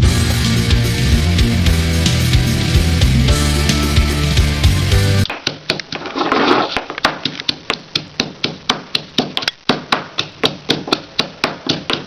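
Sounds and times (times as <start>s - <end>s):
pestle pounding in a mortar: 7.0s - 12.0s.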